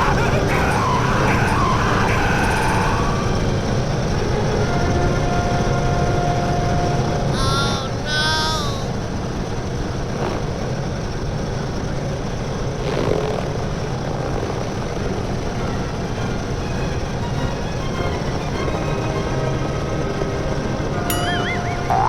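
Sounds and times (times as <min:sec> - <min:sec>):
low engine-like drone: 0:00.0 - 0:22.0
rising and falling squeal: 0:00.7 - 0:07.4, 0:15.5 - 0:22.0.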